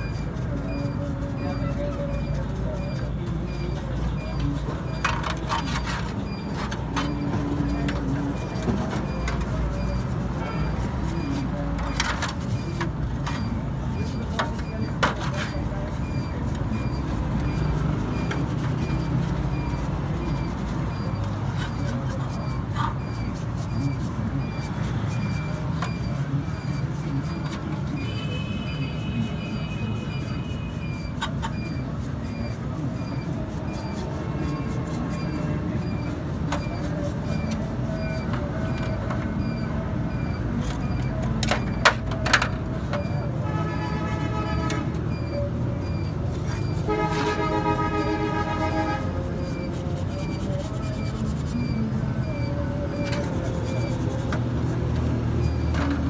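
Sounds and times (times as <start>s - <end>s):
traffic rumble: 0.0s - 56.0s
vehicle horn: 28.0s - 31.3s, 43.4s - 45.0s, 46.5s - 49.8s.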